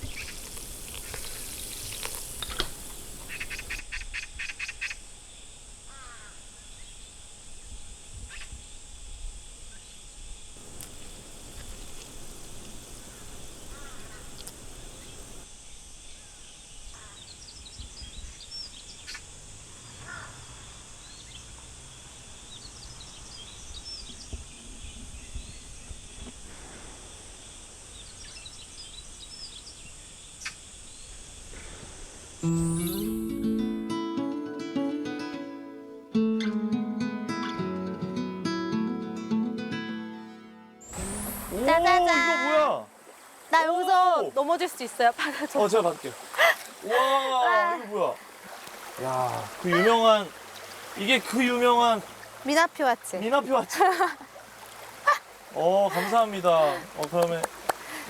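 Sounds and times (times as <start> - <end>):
rapid ticks: 0.0 - 3.8, 10.6 - 15.4
small birds chirping: 0.0 - 3.8, 10.6 - 15.4, 49.3 - 53.6
steady background hiss: 0.0 - 3.8, 9.8 - 15.5, 27.2 - 36.1, 40.8 - 58.0.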